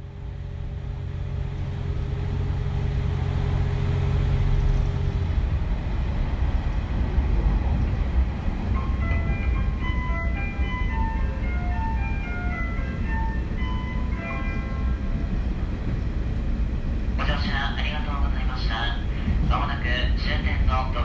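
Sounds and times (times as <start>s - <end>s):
diesel engine drone: 0.0s - 21.0s
train wheels rumbling on track: 0.0s - 21.0s.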